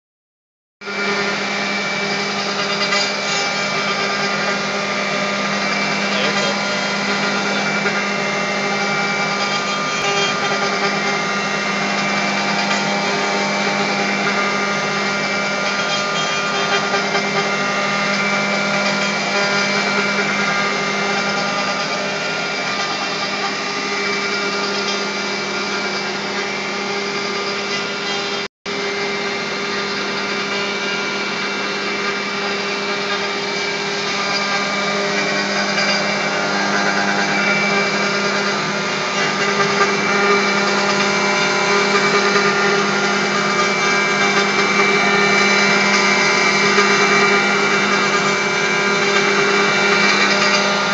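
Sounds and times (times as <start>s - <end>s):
router spindle whining: 0.8s - 50.9s.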